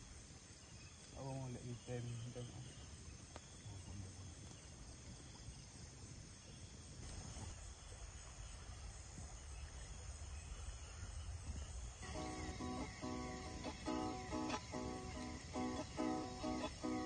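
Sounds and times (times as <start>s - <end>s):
crickets chirping: 0.0s - 17.0s
strummed guitar music: 12.0s - 17.0s.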